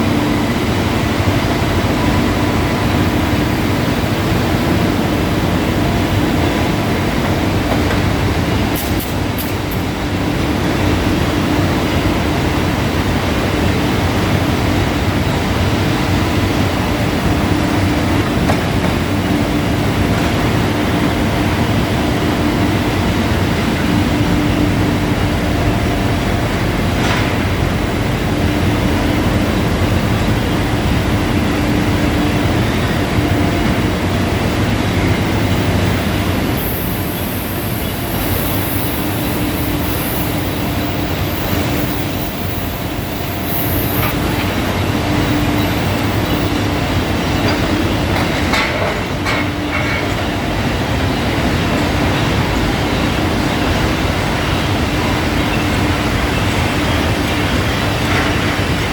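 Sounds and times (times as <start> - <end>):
rolling mill machinery din: 0.0 - 58.9
high hiss: 34.7 - 47.4.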